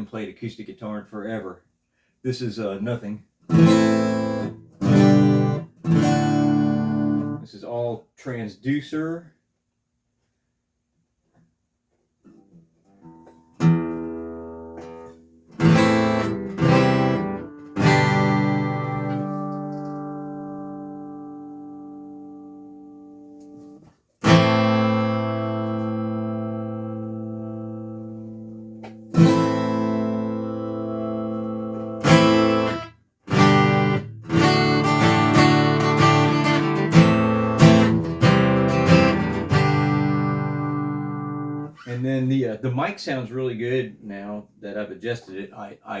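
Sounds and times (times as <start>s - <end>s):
acoustic guitar strummed: 3.5s - 7.4s, 12.3s - 41.9s.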